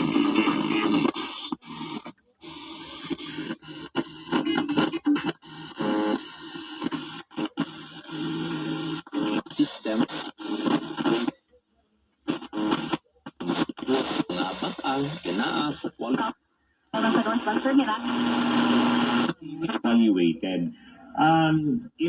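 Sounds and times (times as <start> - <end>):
radio broadcast from speaker: 0.0 - 11.6, 12.2 - 22.0.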